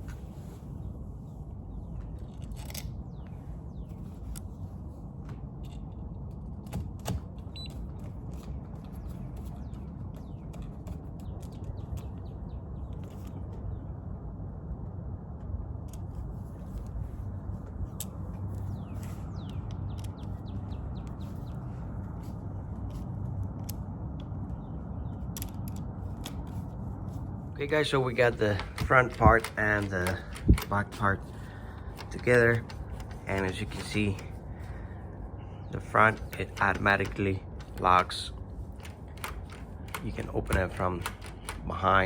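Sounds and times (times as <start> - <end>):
low background rumble: 0.0 - 42.0
steady low hum: 0.0 - 42.0
clicks and scrapes of lock parts: 1.9 - 13.6, 15.9 - 24.4, 25.1 - 42.0
bird chirping: 7.5 - 13.9, 17.9 - 22.0.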